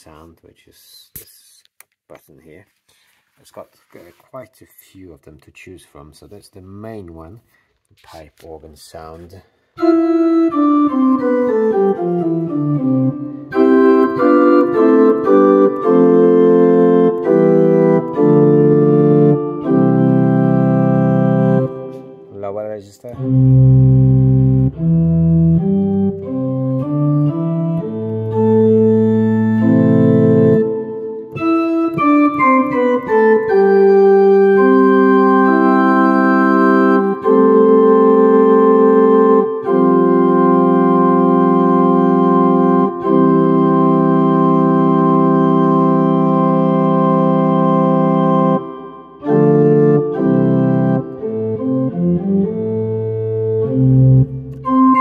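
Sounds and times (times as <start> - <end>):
pipe organ chords: 9.8 - 55.0.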